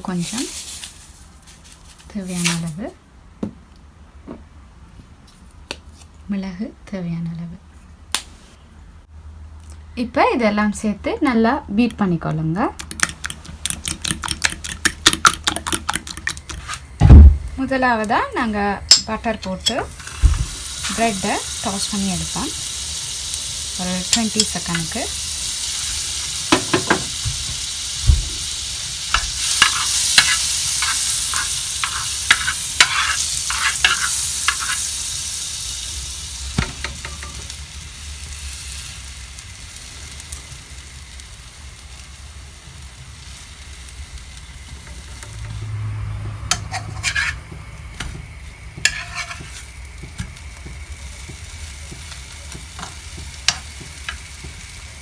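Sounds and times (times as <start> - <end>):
bread sizzling in butter: 19.9 - 45.8, 46.7 - 55.0
spatula scraping a pan: 29.2 - 34.9, 46.5 - 48.1, 48.8 - 50.3.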